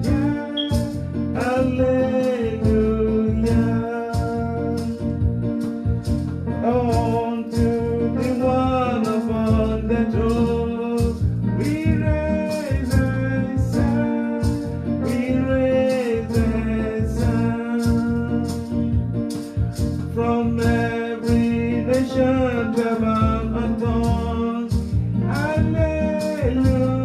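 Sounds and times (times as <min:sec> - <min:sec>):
gospel song with singing voice: 0:00.0 - 0:27.0.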